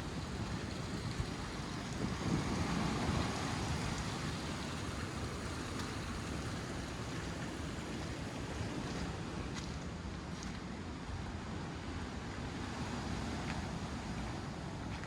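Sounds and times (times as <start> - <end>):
ocean surf: 0.0 - 15.0
wind: 0.0 - 15.0.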